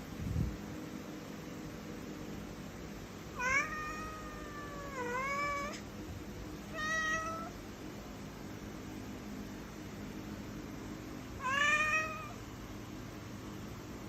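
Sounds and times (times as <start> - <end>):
cat meowing: 3.4 - 5.8, 6.7 - 7.6, 11.4 - 12.4.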